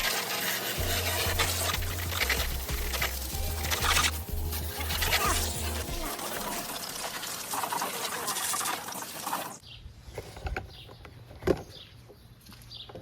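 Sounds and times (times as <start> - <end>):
hose water spraying hiss: 0.0 - 9.6.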